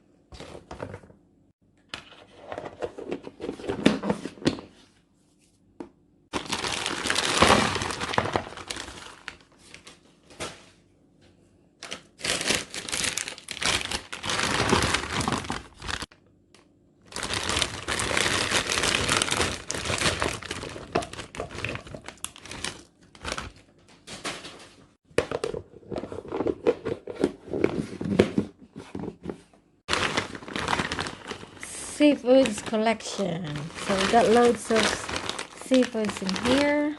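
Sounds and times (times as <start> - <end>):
plastic packaging crinkling: 6.3 - 10.1, 11.8 - 16.1, 17.1 - 24.7, 29.9 - 36.9.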